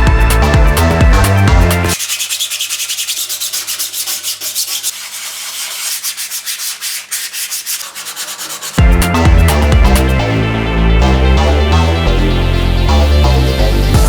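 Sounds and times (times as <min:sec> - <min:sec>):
music: 0:00.0 - 0:02.0, 0:08.8 - 0:14.0
rhythmic high-pitched scraping: 0:00.2 - 0:10.2.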